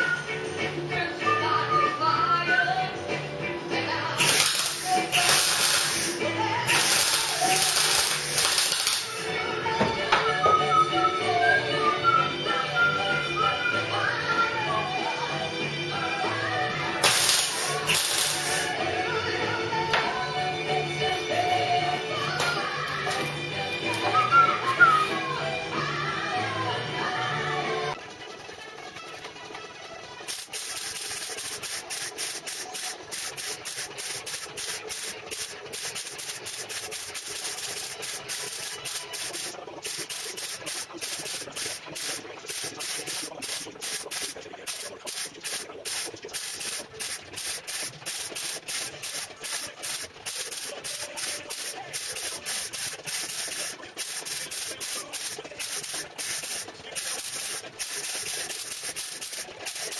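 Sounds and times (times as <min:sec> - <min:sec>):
harsh hiss of metalworking: 0:04.2 - 0:09.2, 0:17.0 - 0:18.8, 0:30.3 - 0:59.9.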